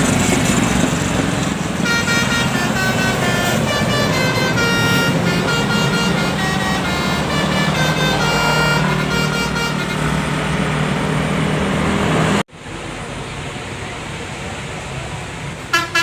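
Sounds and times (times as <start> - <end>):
bus engine hum: 0.0 - 16.0
bus horn melody: 1.7 - 11.1, 15.7 - 16.0.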